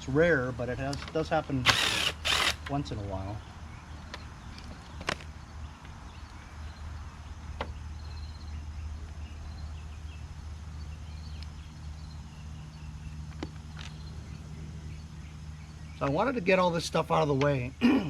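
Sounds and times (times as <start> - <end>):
sharp clicks: 1.7 - 2.8.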